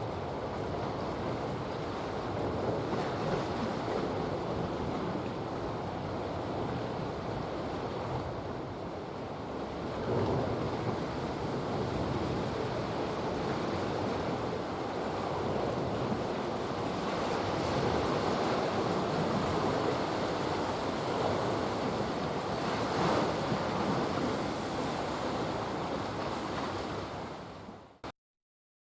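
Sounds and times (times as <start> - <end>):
sea waves washing: 10.8 - 27.7.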